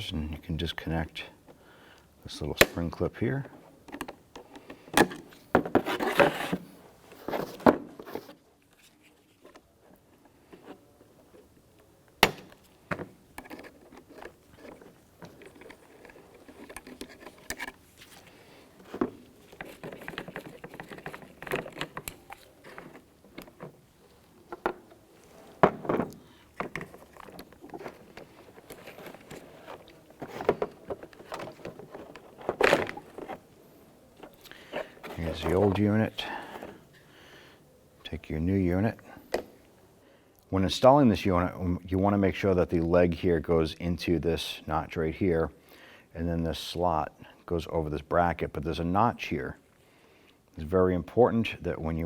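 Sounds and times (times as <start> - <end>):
clicks and rattles of parts: 2.5 - 37.0.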